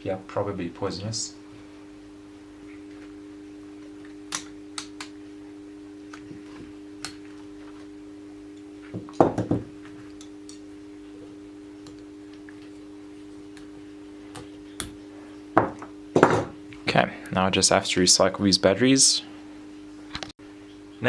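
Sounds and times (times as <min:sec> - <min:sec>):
steady electrical hum: 0:00.0 - 0:21.0
battery cells clicking: 0:04.3 - 0:05.2
battery cells knocking: 0:08.9 - 0:10.6.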